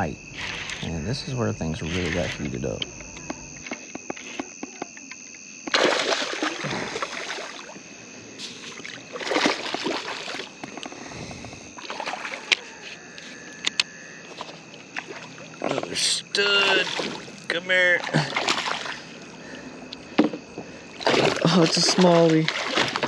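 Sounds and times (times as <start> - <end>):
night insects: 0.0 - 23.0
water splashing around kayak: 0.2 - 1.0, 5.7 - 12.8, 14.3 - 23.0.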